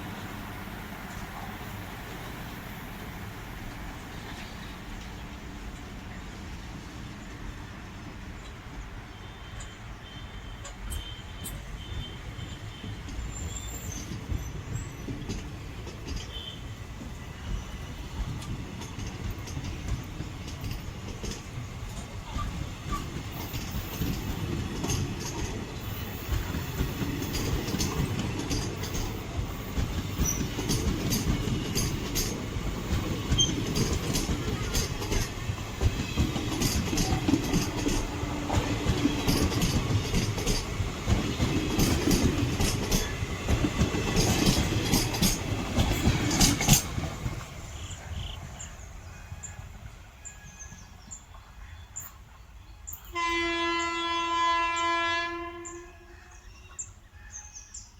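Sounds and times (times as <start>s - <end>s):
train wheels rumbling: 0.0s - 55.8s
wheels clacking over rail joints: 12.7s - 48.7s
wheel squeaks: 33.0s - 40.7s.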